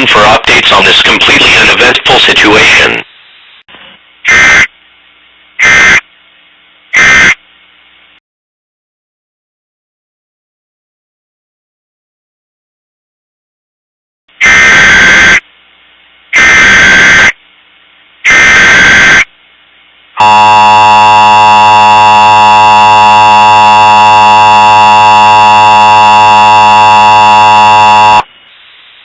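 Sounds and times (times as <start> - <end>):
digital data tone bursts: 20.2 - 28.3
two-tone attention signal: 20.2 - 28.3.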